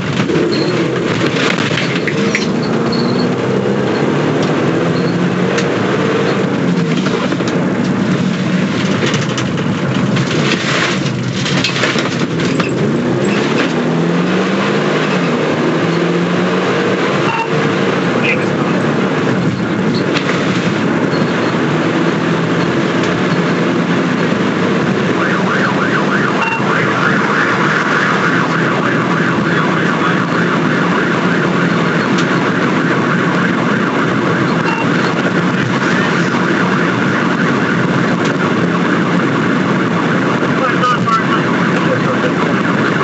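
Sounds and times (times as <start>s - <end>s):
car engine and road noise: 0.0s - 43.0s
fluttering high siren tone: 25.1s - 35.2s.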